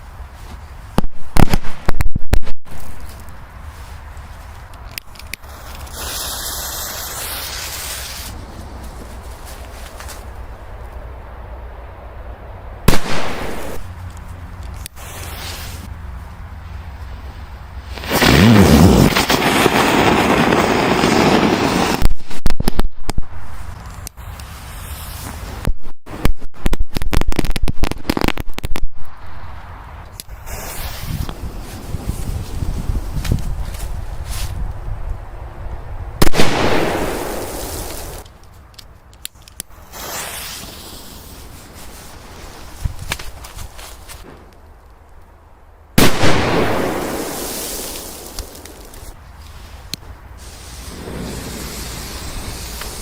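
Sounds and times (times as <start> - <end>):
pyrotechnic charge hissing rush: 5.4 - 8.6, 14.9 - 15.9, 39.7 - 42.9, 46.0 - 53.0
firecracker bang: 12.9 - 13.9, 17.9 - 22.8, 36.2 - 38.2, 46.0 - 49.0.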